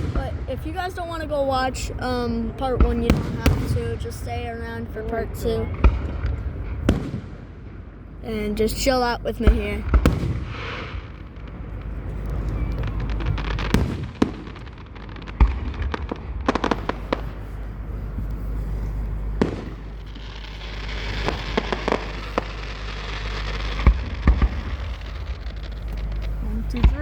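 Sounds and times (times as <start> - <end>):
fireworks bangs: 0.0 - 27.0
fireworks crackling: 0.0 - 27.0
low rumble: 0.0 - 27.0.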